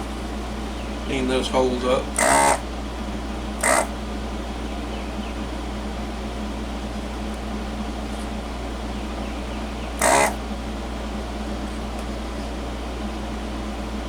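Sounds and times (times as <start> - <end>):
steady low hum: 0.0 - 14.0
vacuum pump suction burst: 2.2 - 2.7, 3.6 - 3.9, 10.0 - 10.4.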